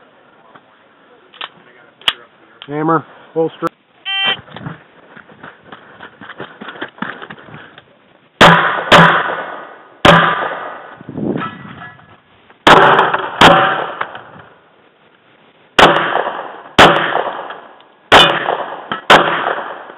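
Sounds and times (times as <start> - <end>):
handgun shots echoing: 15.8 - 19.9.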